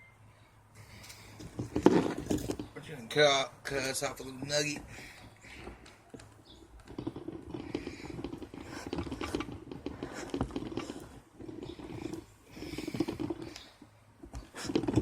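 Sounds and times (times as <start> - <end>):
knife scraping wood: 7.0 - 13.6.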